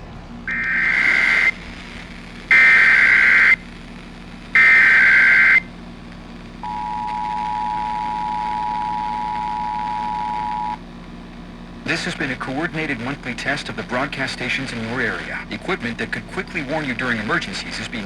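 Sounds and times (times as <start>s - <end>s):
screechy data tone bursts: 0.5s - 3.8s, 4.5s - 5.7s, 6.6s - 10.8s
two-tone attention signal: 6.6s - 10.8s.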